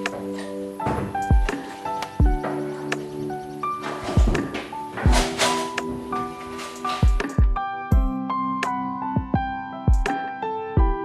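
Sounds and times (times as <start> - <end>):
low thudding beat: 1.0 - 3.4, 4.2 - 5.5, 7.0 - 8.2, 9.2 - 10.1.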